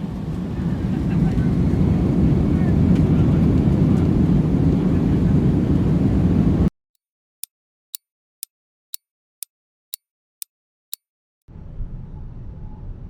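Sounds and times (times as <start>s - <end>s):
airliner cabin rumble: 0.0s - 6.7s.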